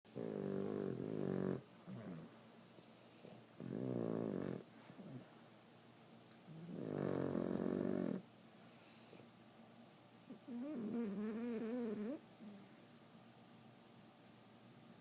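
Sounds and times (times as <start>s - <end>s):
dog snoring: 0.1s - 5.2s, 6.4s - 9.2s, 10.3s - 12.6s
soft breaths: 0.6s - 5.7s, 6.3s - 9.4s, 12.1s - 13.2s.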